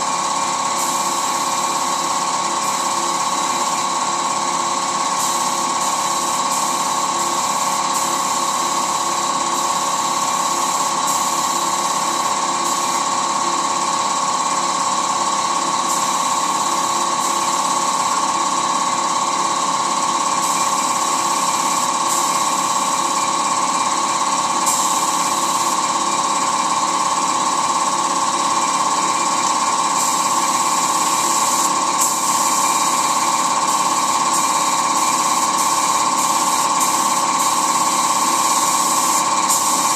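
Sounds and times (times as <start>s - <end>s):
air compressor running: 0.0s - 39.9s
paint spray gun hissing: 0.0s - 39.9s.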